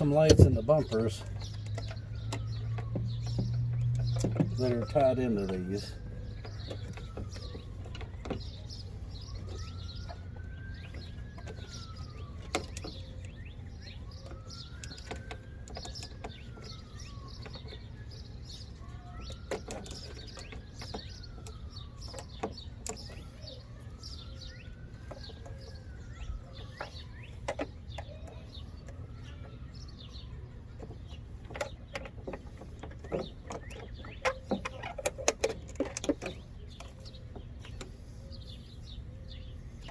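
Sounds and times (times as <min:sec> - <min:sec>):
birds chirping: 0:00.0 - 0:39.9
rising and falling bird call: 0:00.9 - 0:31.2
light clicks and knocks: 0:30.8 - 0:38.0.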